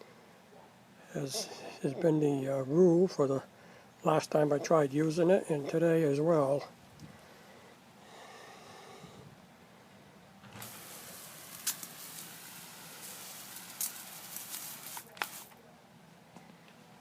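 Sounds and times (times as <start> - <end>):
water spray hissing: 10.6 - 15.5.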